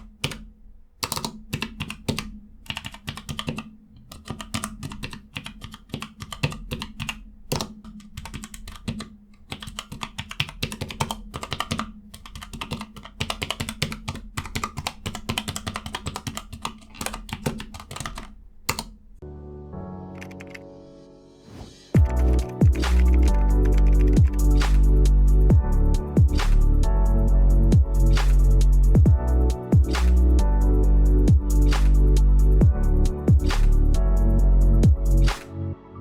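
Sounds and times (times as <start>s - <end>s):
keystroke clicks: 0.0s - 19.0s, 20.2s - 20.6s, 22.2s - 24.4s.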